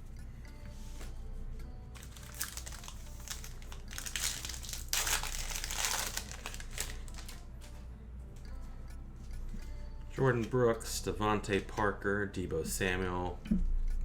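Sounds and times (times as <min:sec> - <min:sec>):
foil wrapper crinkling: 0:02.0 - 0:07.4.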